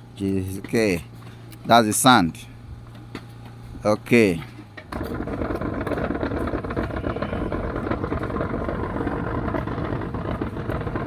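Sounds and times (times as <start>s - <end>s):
small winch engine running: 4.9s - 11.0s.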